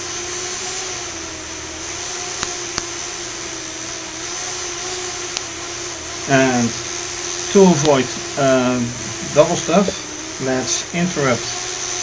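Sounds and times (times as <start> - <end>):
small electric motors whirring: 0.0 - 12.0
faint clicks: 7.8 - 8.0.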